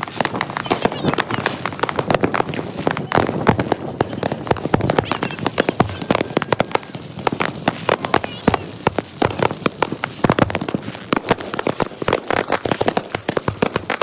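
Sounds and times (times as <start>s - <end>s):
fireworks popping and banging: 0.0s - 14.0s.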